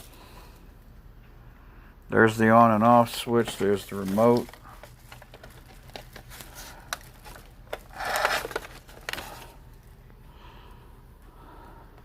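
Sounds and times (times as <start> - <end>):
plastic toy clicks: 7.8 - 8.8.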